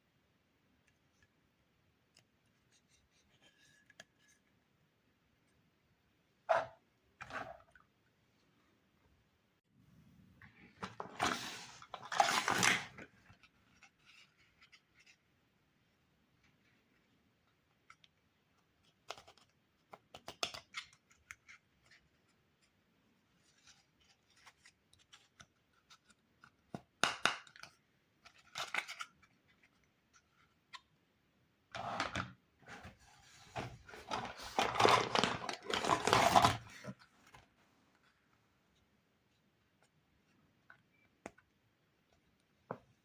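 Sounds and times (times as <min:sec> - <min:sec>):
plastic rustling: 0:32.8 - 0:37.6.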